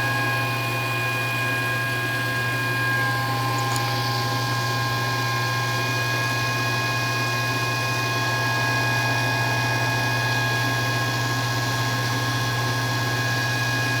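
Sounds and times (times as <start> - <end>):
garbage disposal running: 0.0 - 10.0.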